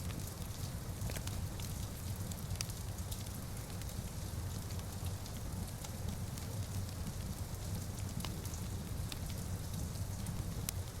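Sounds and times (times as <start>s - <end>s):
rain on windows: 0.0s - 11.0s
wood fire crackling: 0.0s - 11.0s.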